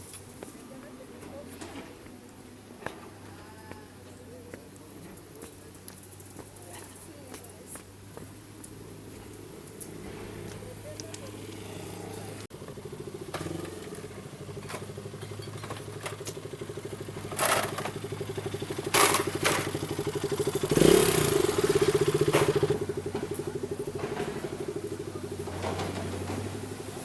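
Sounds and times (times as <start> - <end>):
vehicle engine pulsing: 7.8 - 27.0.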